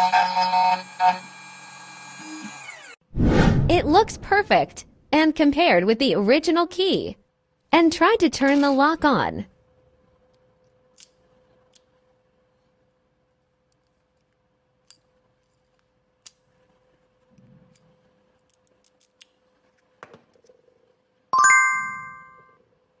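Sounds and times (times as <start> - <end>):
bright bell-like ding: 21.4 - 22.5.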